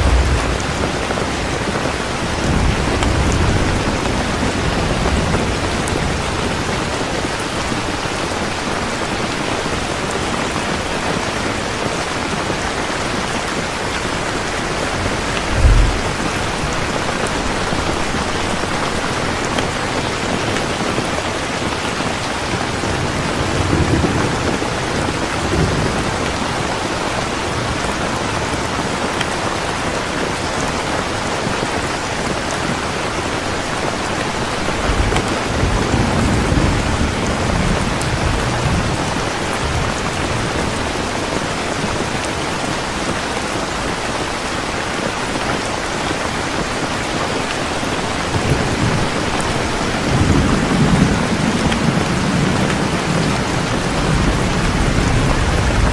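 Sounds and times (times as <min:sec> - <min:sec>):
low thud of thunder: 0:00.0 - 0:06.7, 0:14.9 - 0:18.8
low rolling thunder: 0:00.0 - 0:08.6, 0:13.4 - 0:20.8, 0:22.4 - 0:28.0, 0:33.4 - 0:41.1, 0:48.2 - 0:55.9
heavy rain falling: 0:00.0 - 0:55.9.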